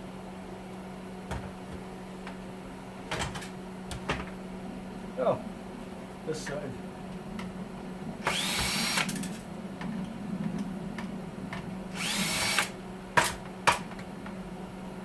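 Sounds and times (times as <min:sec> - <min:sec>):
power drill motor whine: 0:08.2 - 0:09.3, 0:11.9 - 0:12.8.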